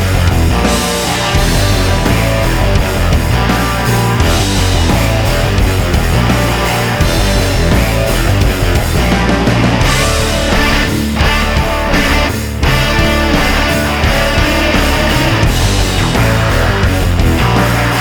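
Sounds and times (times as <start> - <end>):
heavy metal music: 0.0 - 18.0.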